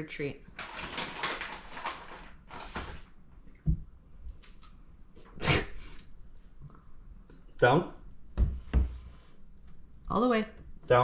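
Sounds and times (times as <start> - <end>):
dull thump: 8.3 - 9.0.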